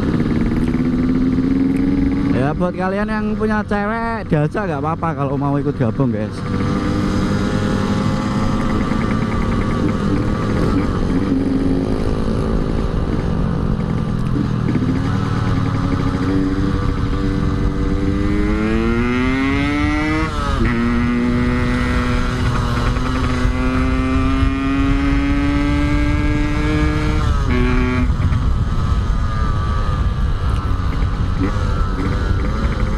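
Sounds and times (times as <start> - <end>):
motorcycle engine accelerating: 0.0 - 32.9
wind rumble: 0.0 - 32.9.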